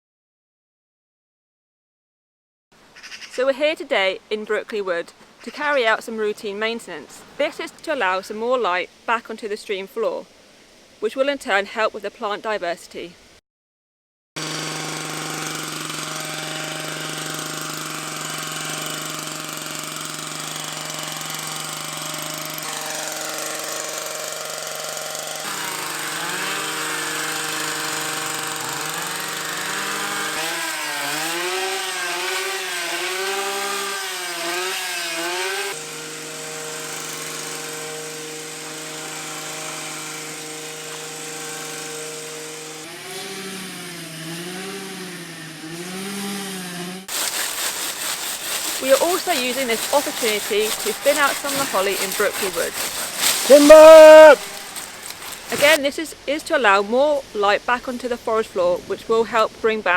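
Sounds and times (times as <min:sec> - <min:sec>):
chainsaw cutting wood: 0:14.4 - 0:55.8.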